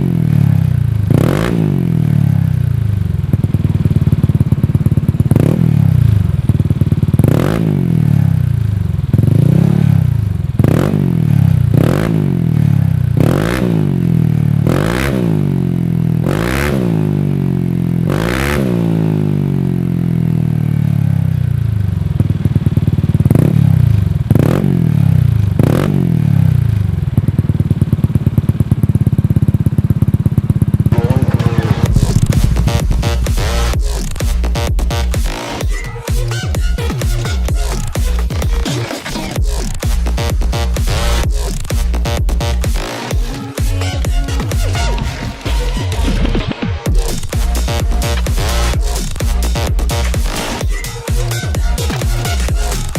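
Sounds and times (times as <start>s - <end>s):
motorcycle engine revving: 0.0s - 52.9s
electronic music: 30.9s - 52.9s.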